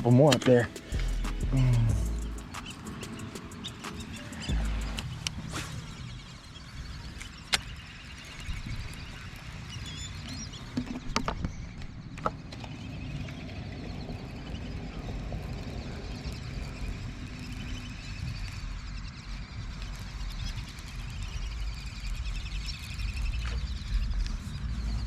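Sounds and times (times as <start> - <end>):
sharp clicks: 0.0 - 5.4
wind rumble on microphone: 4.1 - 25.0.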